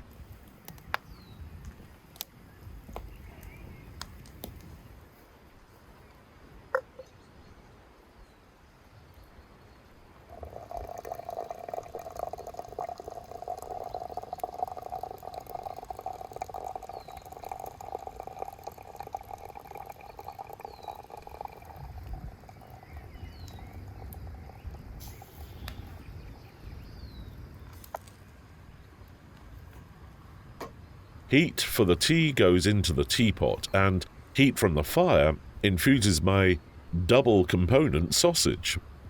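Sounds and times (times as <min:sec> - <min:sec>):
water pouring with gurgle: 0:10.3 - 0:25.5.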